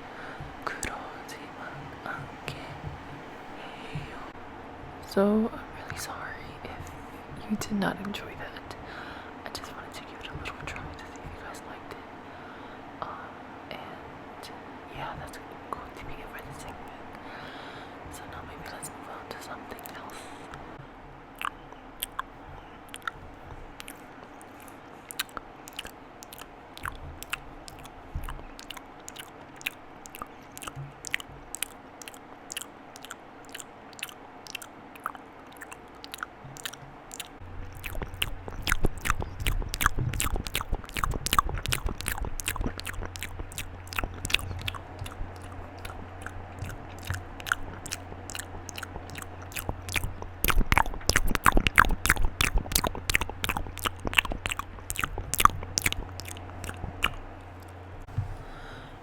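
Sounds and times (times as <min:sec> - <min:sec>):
wet mouth clicks and smacks: 0:21.4 - 0:57.8
low rumble: 0:37.4 - 0:59.0.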